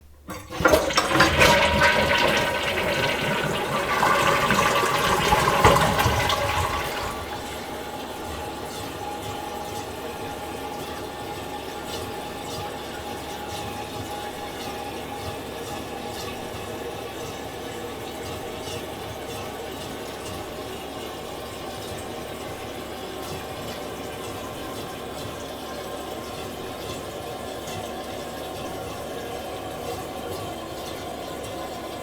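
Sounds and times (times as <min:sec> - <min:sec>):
toilet flushing: 0:00.0 - 0:32.0
toilet tank refilling hiss: 0:00.2 - 0:09.3.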